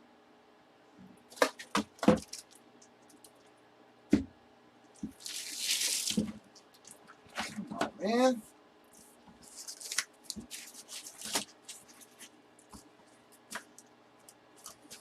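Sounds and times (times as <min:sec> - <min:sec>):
packaging rustling: 0:05.1 - 0:07.6, 0:09.0 - 0:12.3.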